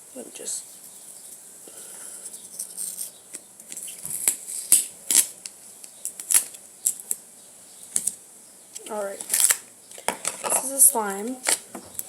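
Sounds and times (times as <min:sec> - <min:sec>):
crackling and sharp clicks: 0:07.9 - 0:10.4.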